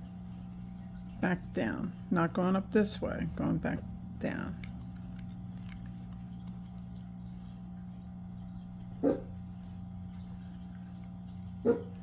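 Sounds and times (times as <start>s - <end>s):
low electrical hum: 0.0s - 12.0s
dog barking: 9.0s - 9.3s, 11.6s - 12.0s.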